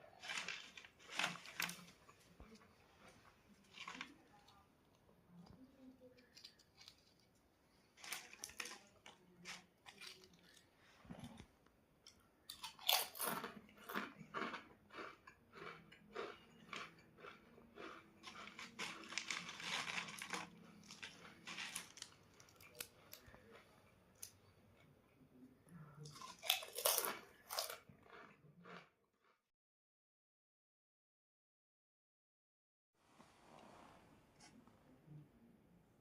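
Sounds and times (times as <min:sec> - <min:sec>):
crunching crispy snacks: 0:00.1 - 0:04.6, 0:06.1 - 0:10.6, 0:12.5 - 0:23.6, 0:26.0 - 0:28.8.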